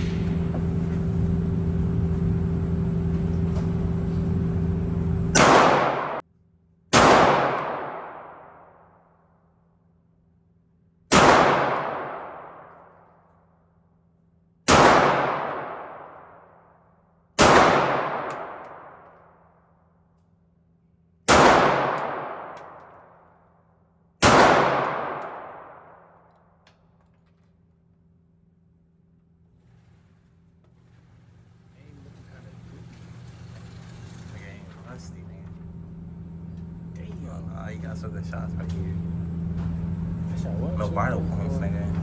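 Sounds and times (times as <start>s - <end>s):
gunshots echoing: 5.3s - 6.2s, 6.9s - 8.8s, 11.1s - 13.1s, 14.7s - 16.6s, 17.4s - 19.2s, 21.3s - 23.2s, 24.2s - 26.2s.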